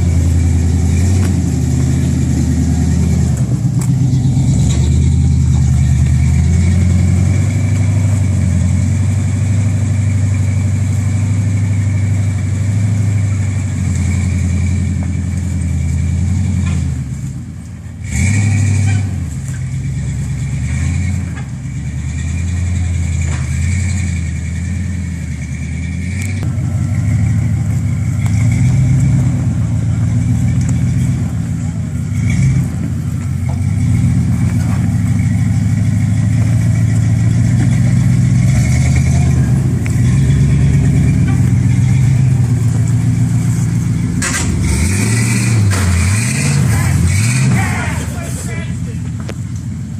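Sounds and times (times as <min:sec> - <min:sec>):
vehicle engine revving under load: 0:18.0 - 0:49.9.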